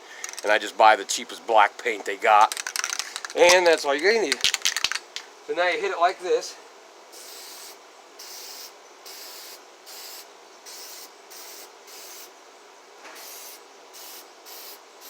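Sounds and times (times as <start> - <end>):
spray-paint can hissing: 7.1 - 12.3, 13.2 - 14.8.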